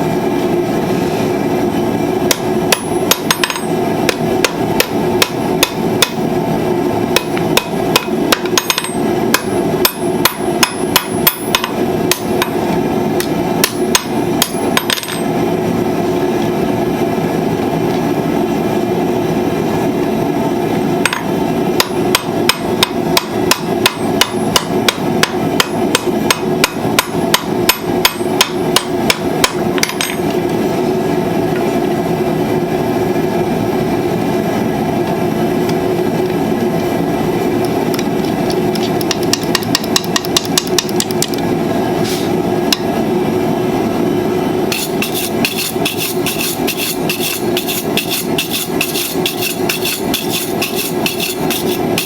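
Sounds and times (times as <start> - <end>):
hammer ringing on anvil: 2.3 - 6.2, 7.2 - 12.6, 13.6 - 15.3, 21.1 - 30.3.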